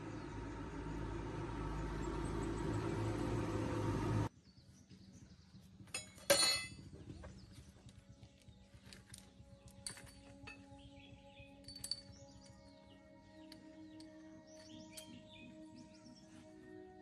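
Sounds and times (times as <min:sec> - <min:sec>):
steady low rumbling: 0:00.0 - 0:04.3
metallic clink: 0:05.9 - 0:06.8, 0:09.8 - 0:10.8, 0:11.6 - 0:12.2.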